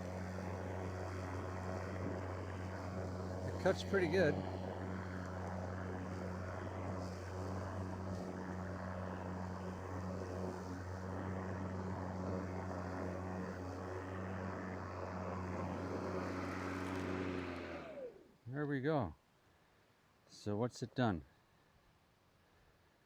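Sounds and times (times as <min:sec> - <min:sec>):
lawnmower cutting grass: 0:00.0 - 0:18.3.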